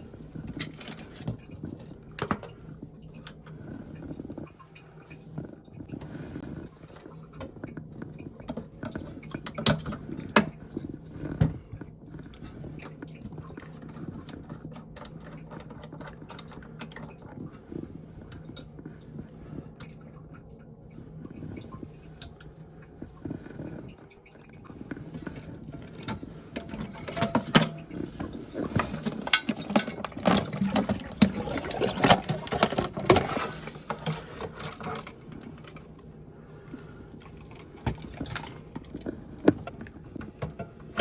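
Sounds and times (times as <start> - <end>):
plastic parts clicking and knocking: 26.0 - 27.9, 28.6 - 35.9.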